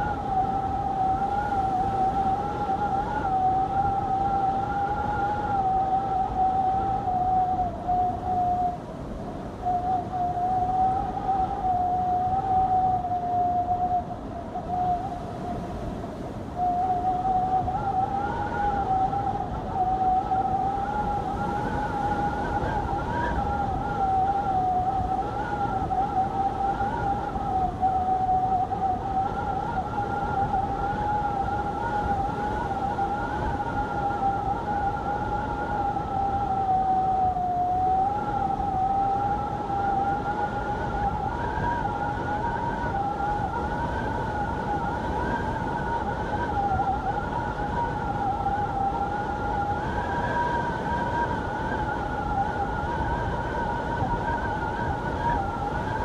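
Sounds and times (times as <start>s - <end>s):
rushing wind noise: 0.0s - 56.0s
wind whistling: 0.0s - 56.0s.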